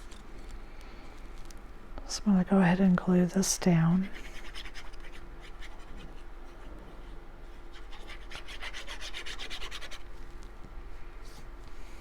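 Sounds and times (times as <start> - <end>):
rubbing paper on cardstock: 4.0 - 10.1.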